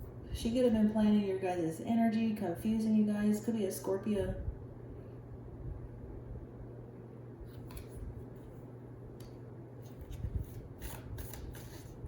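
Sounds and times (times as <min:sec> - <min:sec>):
low steady hum: 0:00.0 - 0:12.0
cards shuffling: 0:07.5 - 0:08.6, 0:09.2 - 0:12.0.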